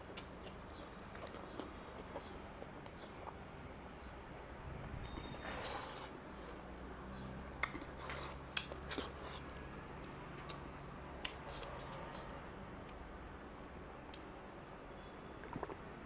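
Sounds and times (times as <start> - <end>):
close-up chewing: 0.0 - 3.4, 5.0 - 9.7.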